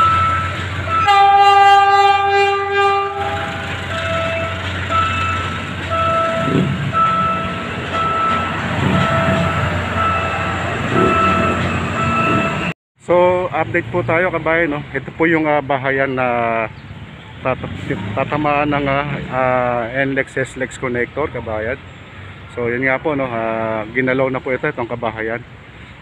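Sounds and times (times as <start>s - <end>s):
short warning tone: 0.0s - 12.7s
train rumble: 0.0s - 12.7s
train horn blast: 0.9s - 4.6s.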